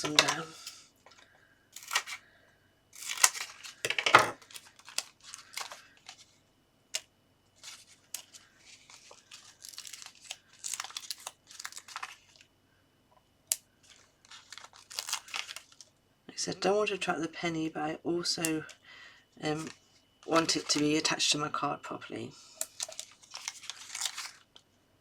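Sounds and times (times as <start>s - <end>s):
foam pads tearing and crinkling: 1.8s - 2.2s, 3.0s - 3.8s, 4.4s - 6.3s, 7.6s - 12.4s, 13.8s - 15.9s, 20.3s - 20.8s, 22.6s - 24.5s.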